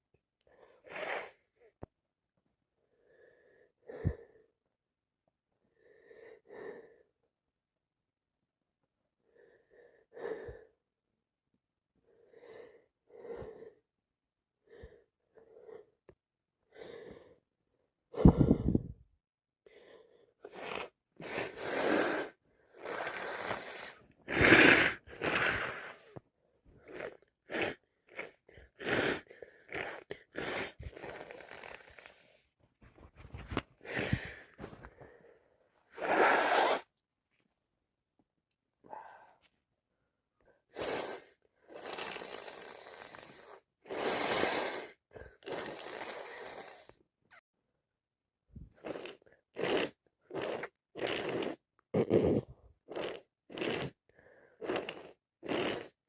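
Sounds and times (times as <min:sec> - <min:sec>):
gasping breaths: 0:18.2 - 0:19.0, 0:33.8 - 0:36.9
sniffing: 0:20.4 - 0:26.2, 0:35.9 - 0:36.9, 0:40.7 - 0:47.0, 0:48.8 - 0:56.0.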